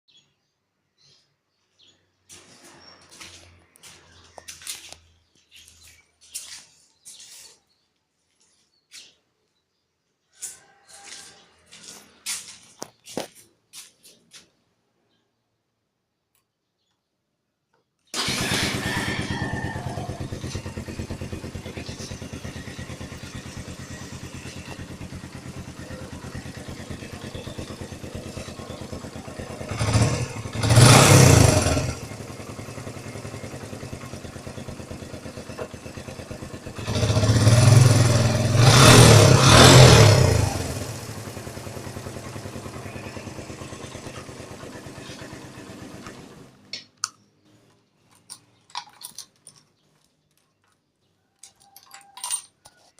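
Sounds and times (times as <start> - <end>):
motorcycle engine idling and revving: 2.2 - 7.5, 10.4 - 13.9, 18.2 - 47.2.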